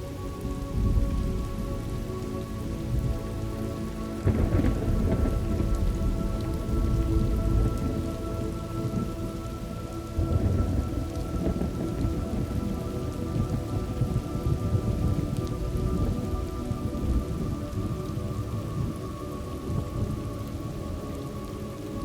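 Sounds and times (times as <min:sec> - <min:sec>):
steady rain: 0:00.0 - 0:22.0
rolling thunder: 0:00.7 - 0:02.0, 0:04.2 - 0:09.5, 0:10.1 - 0:19.0.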